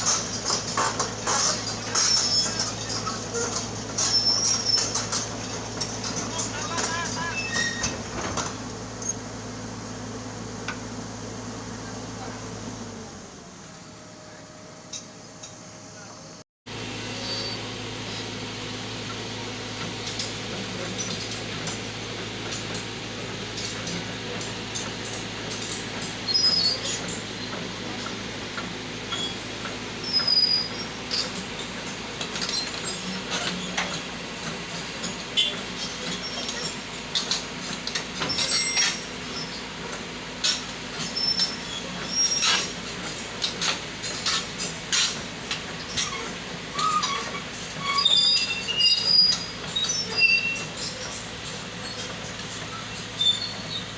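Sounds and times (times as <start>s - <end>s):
metallic squeals and clanks: 0.0s - 9.2s, 17.2s - 18.3s, 24.6s - 27.6s, 29.0s - 34.1s, 35.0s - 39.7s, 40.4s - 53.9s
diesel engine running: 0.0s - 53.9s.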